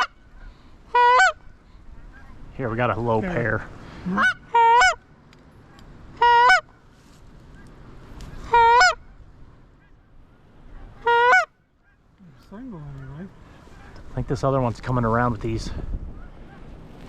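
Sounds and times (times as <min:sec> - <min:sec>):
goose honking: 0:00.9 - 0:01.4, 0:02.0 - 0:02.4, 0:03.1 - 0:05.0, 0:06.1 - 0:06.7, 0:08.3 - 0:09.2, 0:10.7 - 0:12.1, 0:12.7 - 0:14.1.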